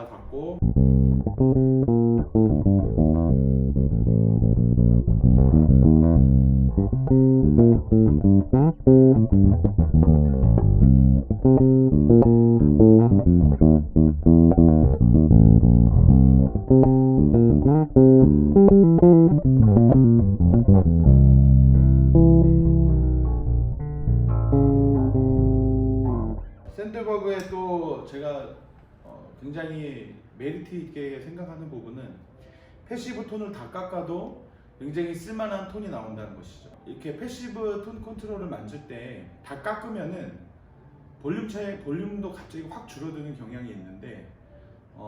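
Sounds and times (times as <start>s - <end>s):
electric bass plucked: 0.6s - 26.7s.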